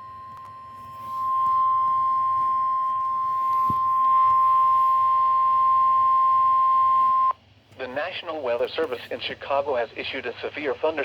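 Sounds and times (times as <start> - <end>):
steady warning alarm tone: 0.0 - 7.4.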